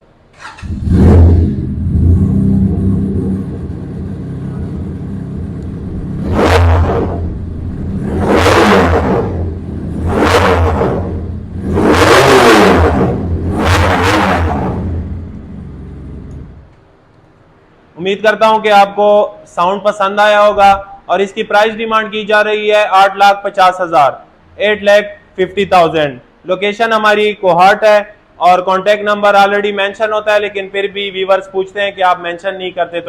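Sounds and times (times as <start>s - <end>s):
motorcycle engine idling and revving: 0.4s - 16.7s.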